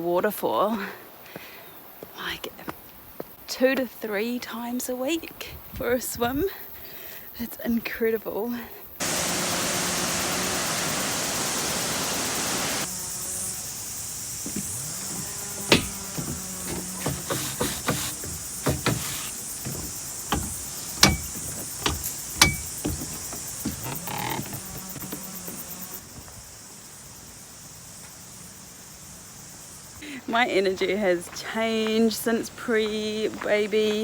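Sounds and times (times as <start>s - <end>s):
waterfall rushing: 9.0s - 12.9s
sharp clicks and knocks: 14.4s - 25.9s.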